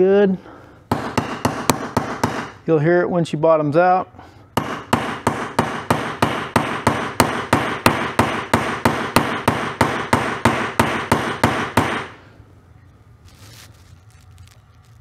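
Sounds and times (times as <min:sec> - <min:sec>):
hammer pounding on metal socket: 0:00.9 - 0:02.5, 0:04.6 - 0:12.1.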